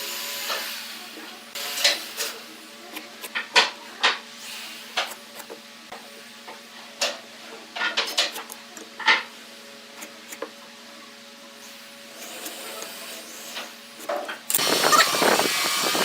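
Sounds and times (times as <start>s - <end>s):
wood lathe humming: 14.6s - 16.0s.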